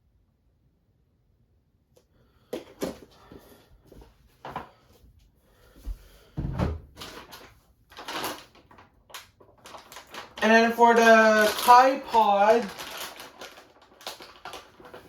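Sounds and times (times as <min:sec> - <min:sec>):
rustling: 0:07.0 - 0:15.0.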